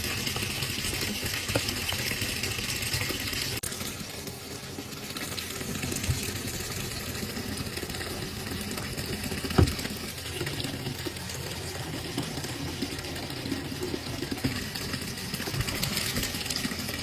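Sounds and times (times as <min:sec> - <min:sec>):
washing machine drum sloshing: 0:05.6 - 0:11.0, 0:14.0 - 0:17.0.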